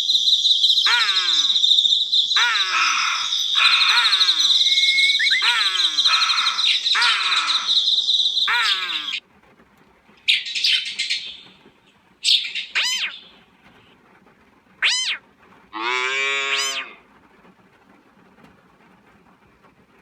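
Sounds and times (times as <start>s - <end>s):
noisy bursts: 0.0s - 9.2s, 11.3s - 17.3s
high animal calls: 0.7s - 9.2s, 12.3s - 13.2s, 14.8s - 15.2s, 15.8s - 17.0s
low animal call: 2.4s - 7.8s, 14.8s - 15.2s, 15.8s - 17.0s.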